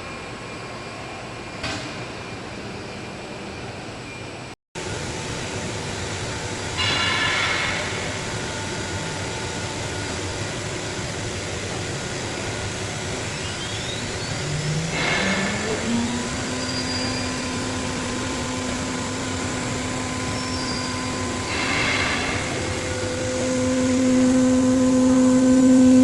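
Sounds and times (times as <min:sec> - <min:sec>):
cnc machine running: 0:04.8 - 0:26.0
motor whine rising in pitch: 0:08.0 - 0:26.0.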